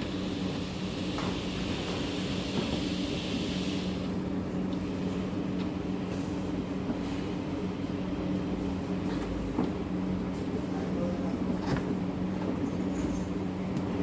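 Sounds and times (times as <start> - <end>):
hiss: 0.0 - 4.2.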